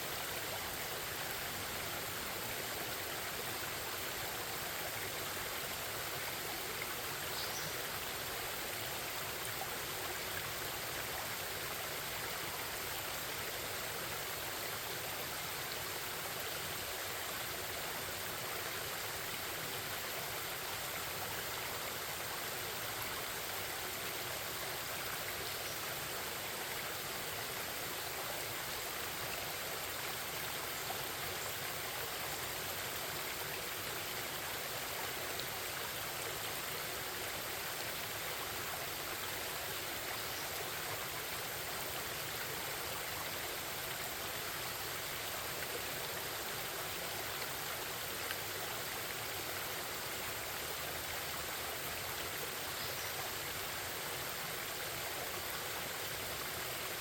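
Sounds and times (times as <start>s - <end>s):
stream babbling: 0.0s - 57.0s.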